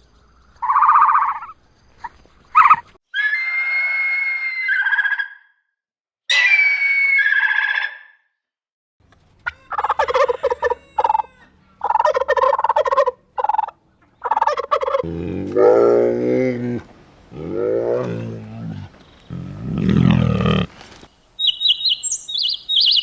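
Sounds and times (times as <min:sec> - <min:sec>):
poultry calling: 0:09.5 - 0:20.7
deep animal call rising in pitch: 0:14.8 - 0:20.7.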